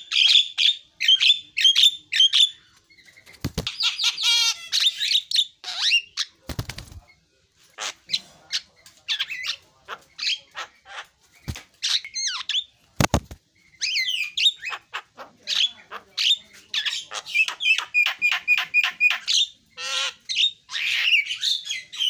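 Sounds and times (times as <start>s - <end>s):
bird rattle: 6.5s - 7.0s.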